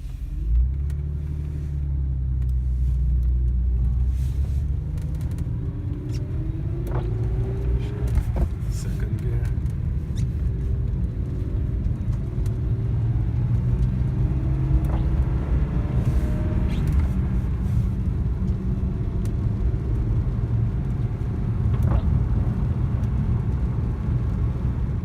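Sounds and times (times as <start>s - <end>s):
car engine revving: 0.0s - 23.6s
road and drivetrain rumble: 0.0s - 25.0s.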